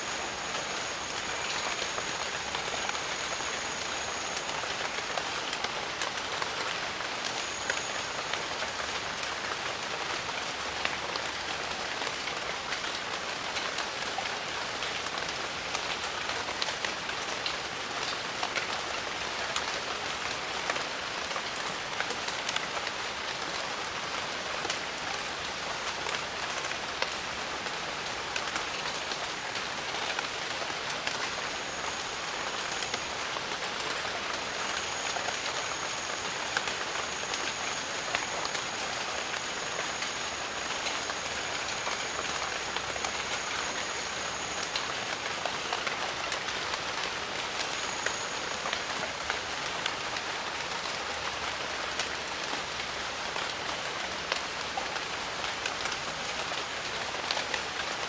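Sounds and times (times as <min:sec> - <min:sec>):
thin high steady tone: 0:00.0 - 0:09.1, 0:28.8 - 0:49.4
steady rain hiss: 0:00.0 - 0:58.0.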